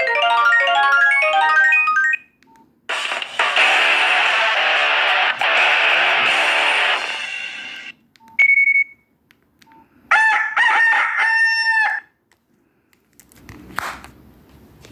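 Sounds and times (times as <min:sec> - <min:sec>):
rooster crow ringtone: 0:10.1 - 0:12.1.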